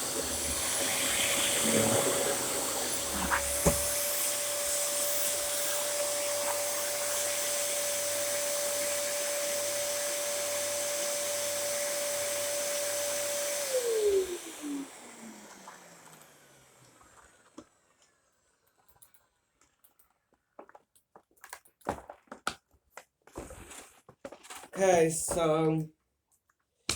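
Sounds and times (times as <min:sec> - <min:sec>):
vacuum cleaner motor whine: 0:00.0 - 0:18.5.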